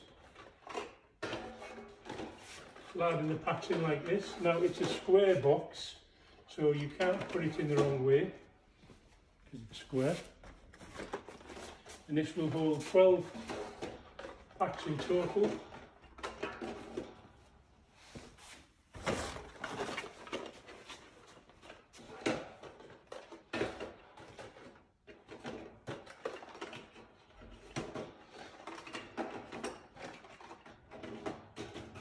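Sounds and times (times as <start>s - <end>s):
boxes sliding into vending machine: 0.0s - 5.9s, 10.8s - 17.4s.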